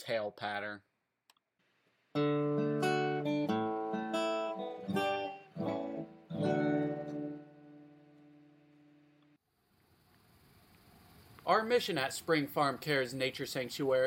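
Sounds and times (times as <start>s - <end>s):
acoustic guitar chords strummed: 2.2s - 9.4s.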